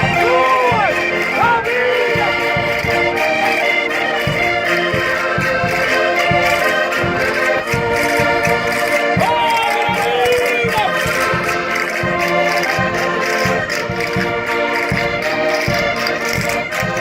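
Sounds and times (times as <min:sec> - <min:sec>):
button accordions playing folk tune: 0:00.0 - 0:17.0
low beat thumps: 0:00.0 - 0:17.0.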